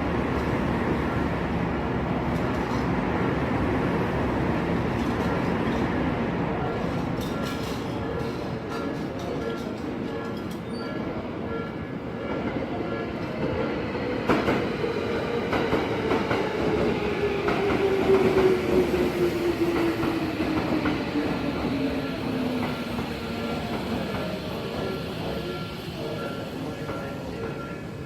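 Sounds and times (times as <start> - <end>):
train wheels clacking on rails: 13.2 - 27.8.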